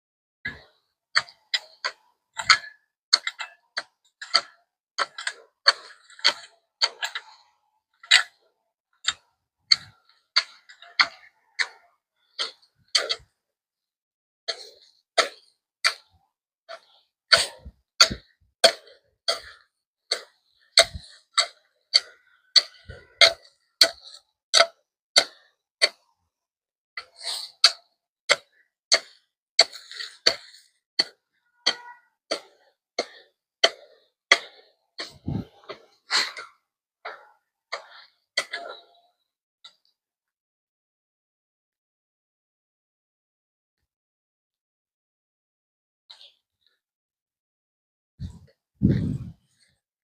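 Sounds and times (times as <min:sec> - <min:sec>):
hand tool striking the ground: 0:01.2 - 0:07.3, 0:10.4 - 0:13.2, 0:16.7 - 0:26.0, 0:27.0 - 0:36.5.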